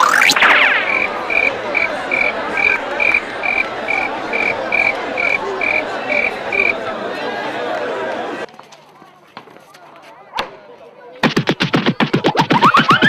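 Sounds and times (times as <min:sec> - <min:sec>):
rising whistle-like glide: 0:00.0 - 0:03.7.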